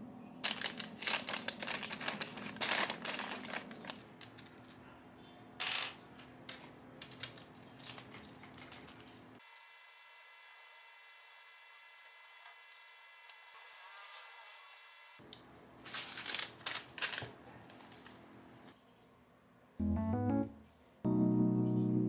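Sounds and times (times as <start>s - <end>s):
handling rustles and clicks: 0.4s - 4.8s, 5.6s - 9.4s, 15.3s - 18.2s.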